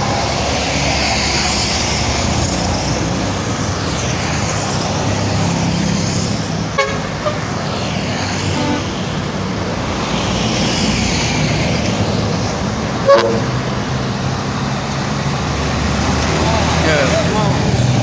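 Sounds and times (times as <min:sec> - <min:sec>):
road traffic passing: 0:00.0 - 0:18.0
car horn toots: 0:06.7 - 0:07.6, 0:08.6 - 0:09.0, 0:13.0 - 0:13.6.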